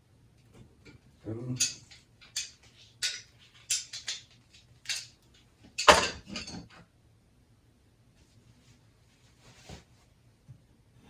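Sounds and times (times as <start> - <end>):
pliers clinking on metal: 5.8 - 6.6
metal knocks: 5.9 - 6.2.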